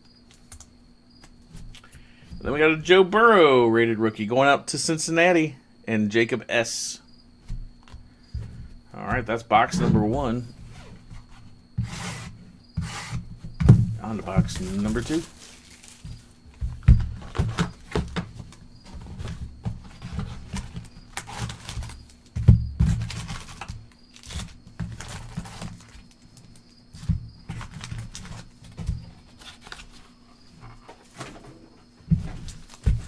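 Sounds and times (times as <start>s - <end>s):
light handling thumps: 7.4s - 11.9s
plastic and foil crinkling: 14.0s - 18.6s, 20.5s - 22.3s, 23.0s - 26.6s, 27.6s - 30.1s.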